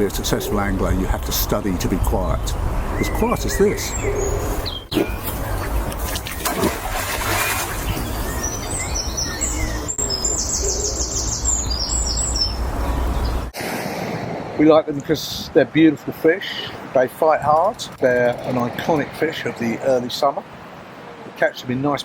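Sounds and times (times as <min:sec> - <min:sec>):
small birds chirping: 0:00.0 - 0:06.4, 0:07.2 - 0:13.6
fast high bird trill: 0:02.9 - 0:05.2.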